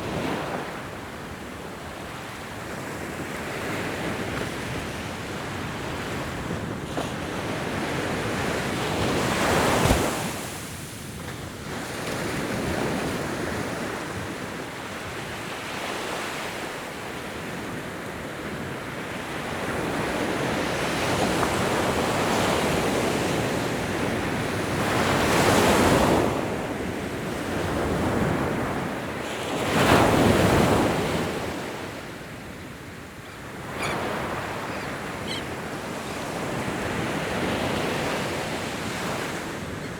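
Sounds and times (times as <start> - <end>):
ocean waves crashing on shore: 17.8 - 39.9.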